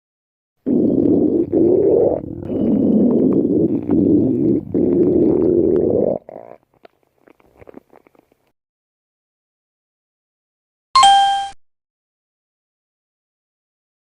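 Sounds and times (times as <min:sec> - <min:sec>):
stomach growling: 0:00.6 - 0:08.5
faint crackles: 0:00.7 - 0:08.5.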